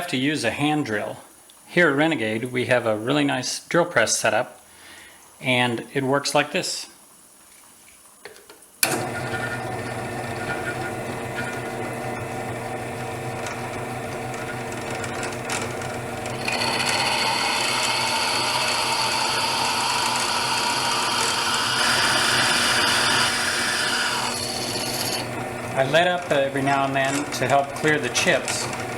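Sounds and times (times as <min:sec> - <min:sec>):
drill press motor running: 0:08.8 - 0:28.9.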